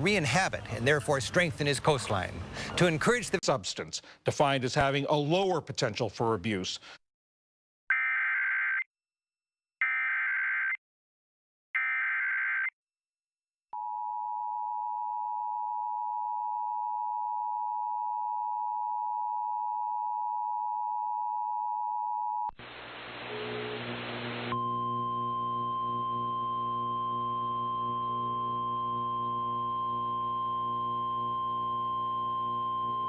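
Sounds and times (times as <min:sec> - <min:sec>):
steady attention tone: 0:22.6 - 0:33.0.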